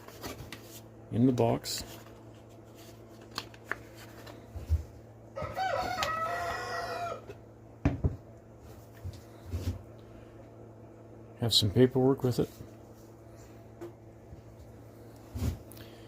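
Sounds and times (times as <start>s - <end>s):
rooster crowing: 5.4s - 7.4s.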